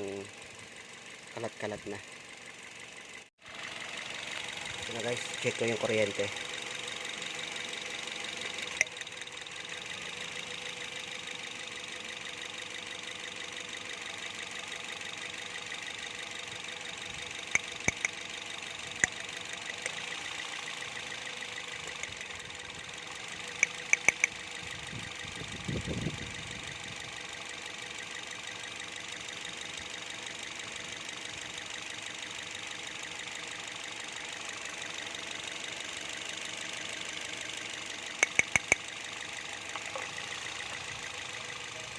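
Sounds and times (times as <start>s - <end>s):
car engine idling: 0.0s - 41.9s
sharp clicks: 17.5s - 18.2s, 23.6s - 24.4s, 38.2s - 38.9s.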